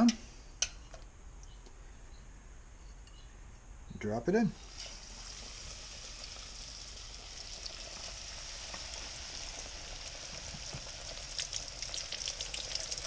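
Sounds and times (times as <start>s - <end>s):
fish deep-frying in oil: 4.6s - 13.0s.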